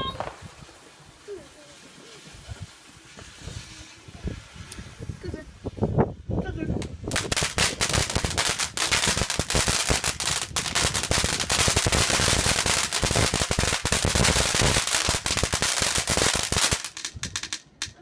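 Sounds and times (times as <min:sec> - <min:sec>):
firecracker string cracks and bangs: 0:06.8 - 0:18.0.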